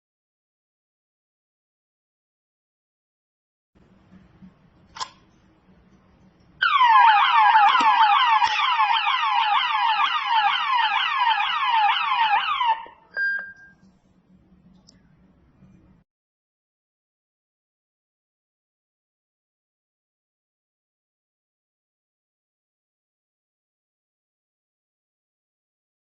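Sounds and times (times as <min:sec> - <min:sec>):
short beep: 0:13.1 - 0:13.8
click: 0:14.7 - 0:15.1.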